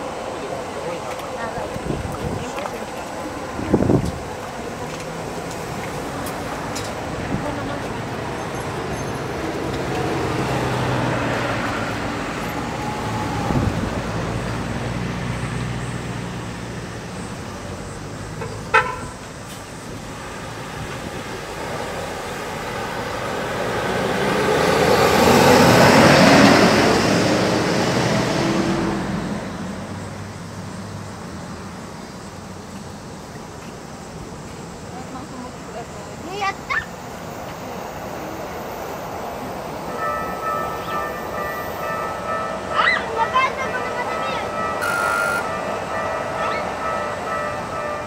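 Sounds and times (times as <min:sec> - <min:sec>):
traffic engines running: 0:00.0 - 0:48.0
vehicle passing close: 0:05.0 - 0:18.6, 0:19.7 - 0:31.1
car horn toot: 0:18.4 - 0:19.2, 0:44.7 - 0:46.7.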